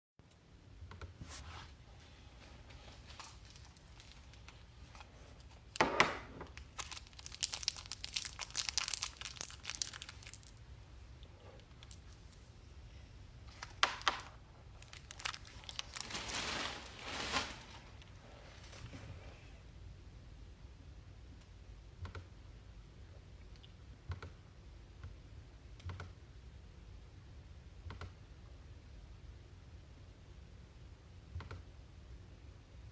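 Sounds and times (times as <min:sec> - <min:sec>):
packaging tearing and crinkling: 0:06.5 - 0:10.6, 0:13.5 - 0:18.0.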